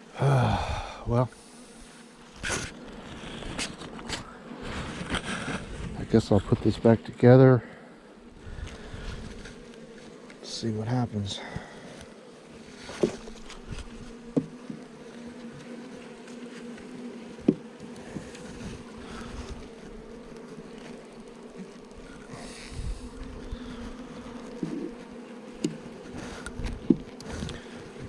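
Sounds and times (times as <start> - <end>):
honeybees buzzing: 0.0 - 28.0
knocks of wooden hive parts: 12.8 - 21.9, 24.4 - 28.0.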